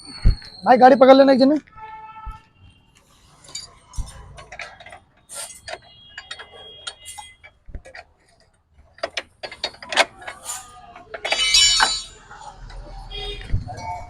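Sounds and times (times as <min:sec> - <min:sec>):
metal tools clinking on metal: 0:03.4 - 0:12.4.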